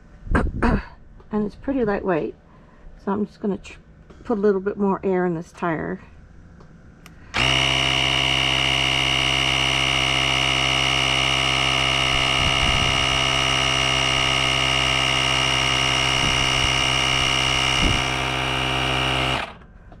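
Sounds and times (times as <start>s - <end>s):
air compressor motor whining: 7.0s - 20.0s.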